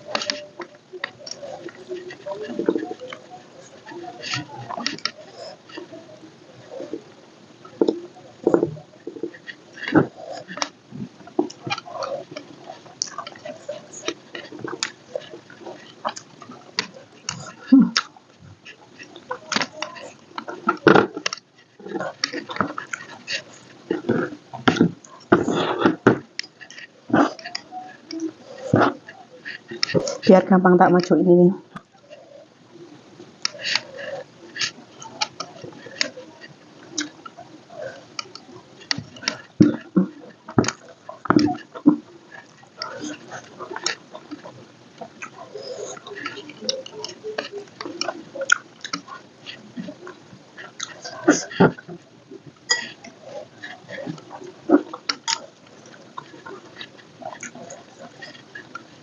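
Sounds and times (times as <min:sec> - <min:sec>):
person chewing with wet smacks: 0:07.8 - 0:30.4, 0:33.4 - 0:59.0
wet mouth clicks: 0:52.6 - 0:58.8.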